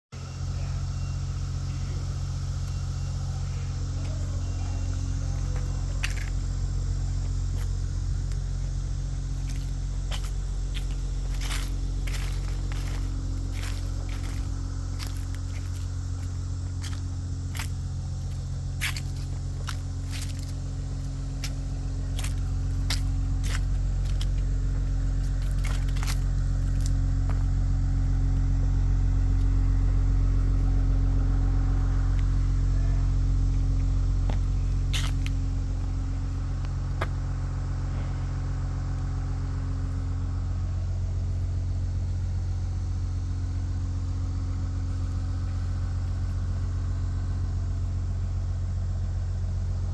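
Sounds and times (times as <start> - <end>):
car engine idling: 0.0 - 49.9.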